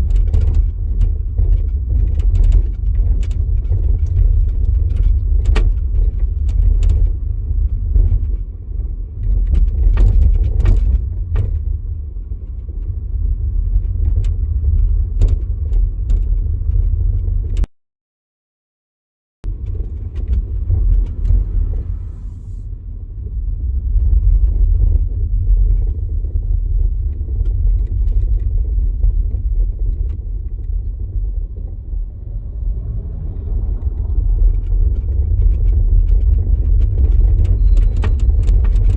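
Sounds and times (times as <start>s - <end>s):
electric car driving rumble: 0.0s - 17.7s, 19.4s - 38.9s
knocks and rattles: 34.4s - 38.9s.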